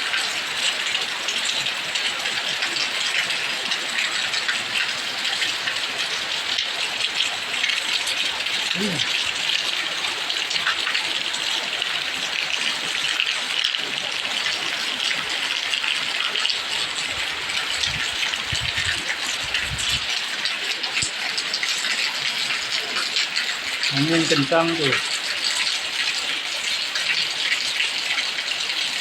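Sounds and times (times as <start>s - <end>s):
heavy rain pouring: 0.0s - 29.0s.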